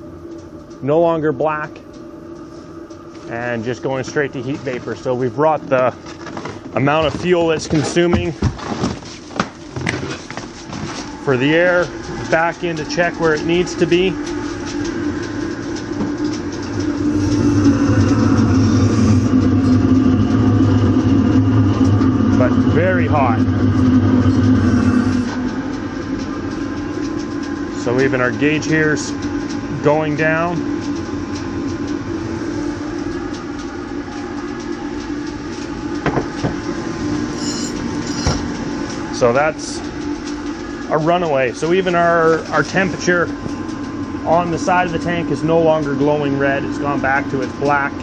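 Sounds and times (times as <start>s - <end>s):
oil furnace burning with low hum: 0.0s - 48.0s
crackles and ticks from hot steel: 0.2s - 1.2s, 1.8s - 3.3s, 11.3s - 17.4s, 25.4s - 32.1s, 32.8s - 36.0s.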